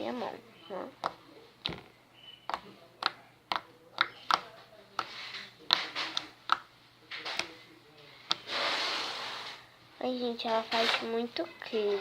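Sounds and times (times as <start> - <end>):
slime clicking and popping: 2.5 - 4.5.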